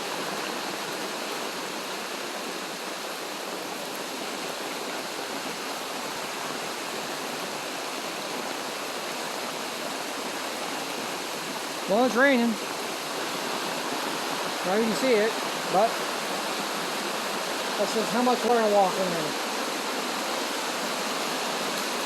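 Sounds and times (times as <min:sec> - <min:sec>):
heavy rain falling: 0:08.4 - 0:22.0.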